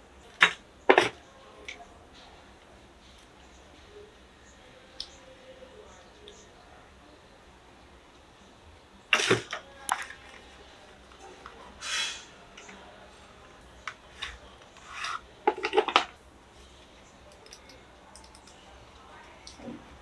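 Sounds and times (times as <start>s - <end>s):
short scrape: 11.8s - 12.3s
rubbing slide: 14.2s - 15.2s.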